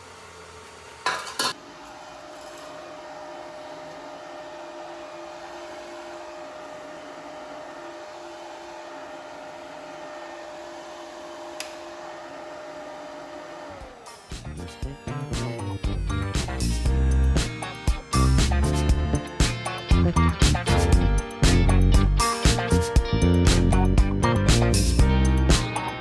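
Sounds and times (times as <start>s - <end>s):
steady mechanical hum: 0.0s - 17.0s.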